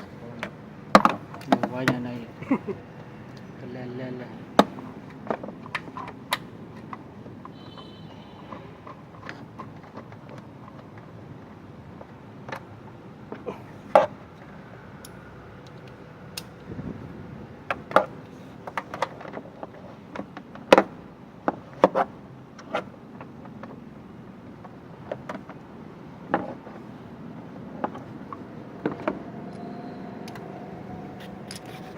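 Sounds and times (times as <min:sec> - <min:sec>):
hand tools clicking and knocking: 0:00.4 - 0:02.2, 0:31.2 - 0:31.9.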